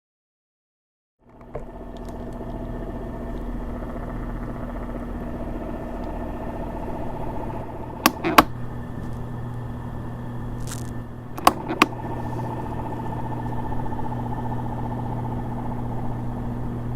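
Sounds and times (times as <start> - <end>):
fan humming and whining: 1.3 - 16.9
sharp clicks: 1.4 - 8.6, 10.7 - 15.6.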